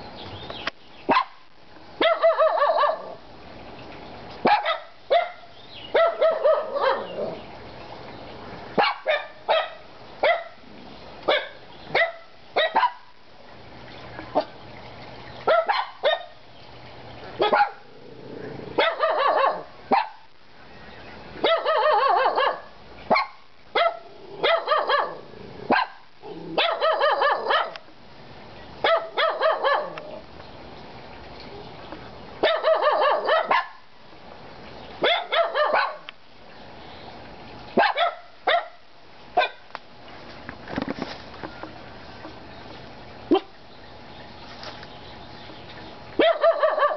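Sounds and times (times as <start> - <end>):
dogs barking: 1.1 - 1.4, 2.0 - 3.2, 4.4 - 7.4, 8.8 - 10.6, 11.2 - 13.1, 15.4 - 16.4, 17.4 - 17.9, 18.7 - 20.3, 21.4 - 27.8, 28.8 - 30.2, 32.4 - 33.8, 35.0 - 36.1, 37.8 - 39.7, 43.3 - 43.6, 46.2 - 46.9.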